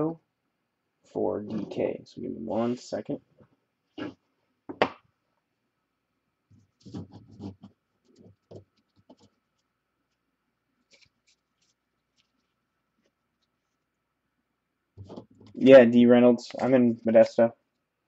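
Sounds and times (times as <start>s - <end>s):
scratches and rustles on desk: 6.5s - 10.2s, 10.8s - 13.9s, 15.0s - 15.6s.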